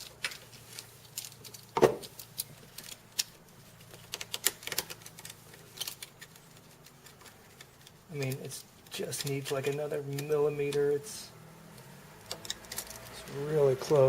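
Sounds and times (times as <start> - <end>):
plastic parts clicking and tapping: 0.0 - 10.9.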